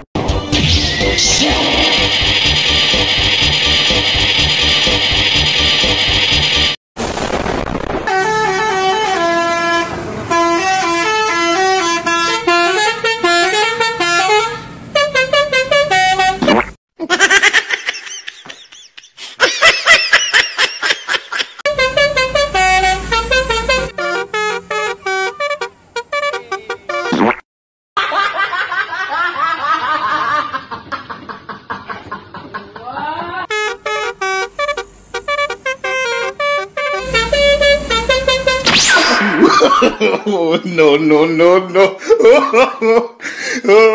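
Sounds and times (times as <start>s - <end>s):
multi-tone bus horn melody: 0.2s - 6.8s, 8.1s - 16.6s, 21.6s - 27.2s, 33.5s - 38.9s.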